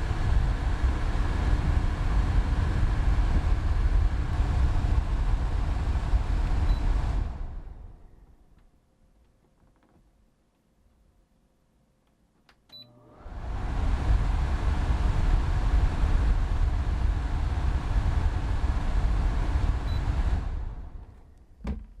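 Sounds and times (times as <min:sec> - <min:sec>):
air conditioner fan running: 0:00.0 - 0:08.5, 0:12.8 - 0:21.9
air conditioner beeping: 0:06.4 - 0:07.4, 0:12.7 - 0:13.2, 0:19.5 - 0:20.6.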